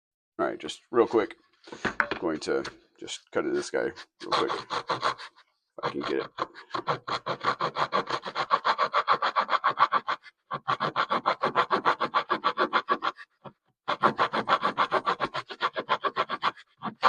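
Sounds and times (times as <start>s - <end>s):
saw cutting wood: 3.6s - 13.3s, 13.9s - 17.0s.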